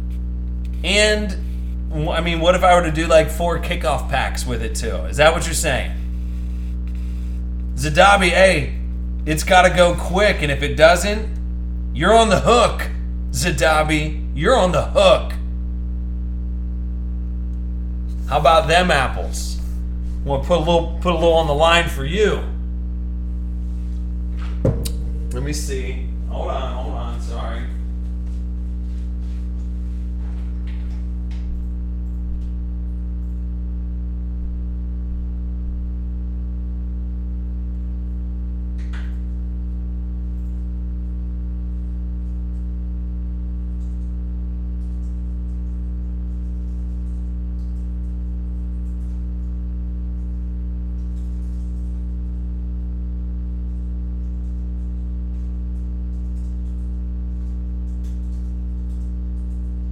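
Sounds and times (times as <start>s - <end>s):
electrical mains hum: 0.0s - 59.9s.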